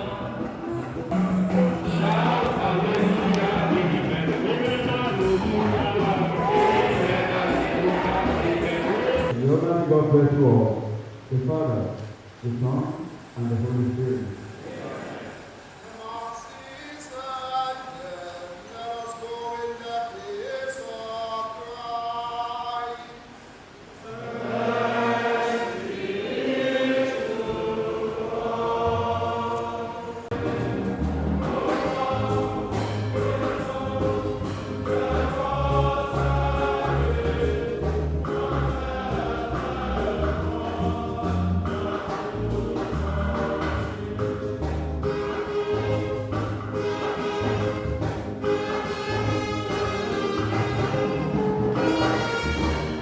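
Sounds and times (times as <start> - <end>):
choir singing: 0.0 - 9.4, 24.0 - 53.0
low bass line: 0.0 - 9.4, 30.3 - 53.0
percussion beat: 0.0 - 9.4, 30.3 - 52.9.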